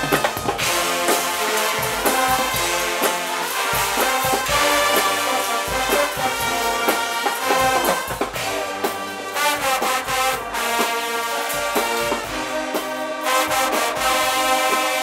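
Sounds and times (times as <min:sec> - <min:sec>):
brass band playing: 0:00.0 - 0:15.0
steady drum beat: 0:00.0 - 0:15.0.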